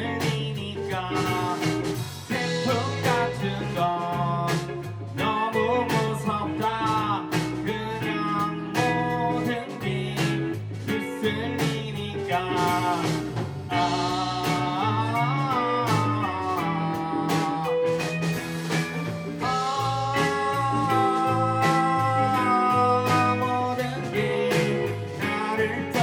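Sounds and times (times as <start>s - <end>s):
drum hits: 0.0s - 26.0s
guitar: 0.0s - 26.0s
person singing: 0.0s - 26.0s.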